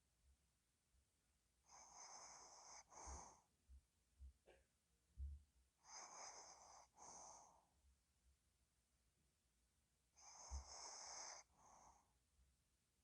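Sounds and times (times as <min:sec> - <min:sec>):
dog snoring with whistling wheeze: 0:01.7 - 0:03.5, 0:05.8 - 0:07.7, 0:10.2 - 0:12.1.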